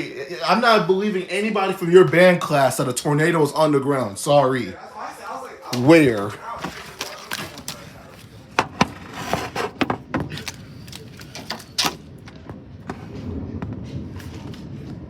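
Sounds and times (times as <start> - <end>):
low rumble: 12.0 - 15.0.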